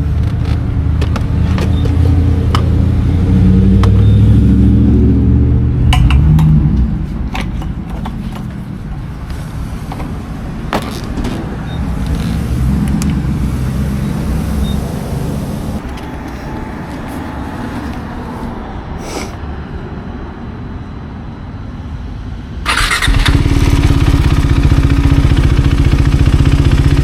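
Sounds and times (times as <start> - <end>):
motorcycle engine at low revs: 0.0 - 15.8, 22.7 - 27.0.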